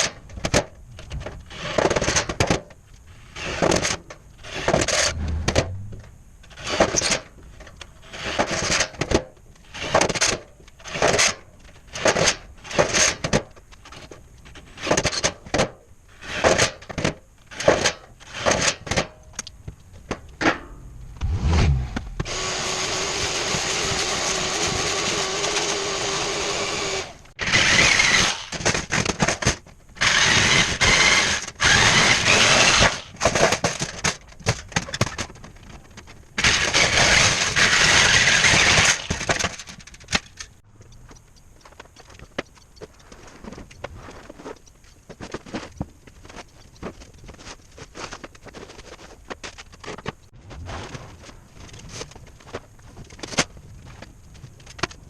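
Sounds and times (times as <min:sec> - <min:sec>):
power drill running: 0:22.3 - 0:28.5.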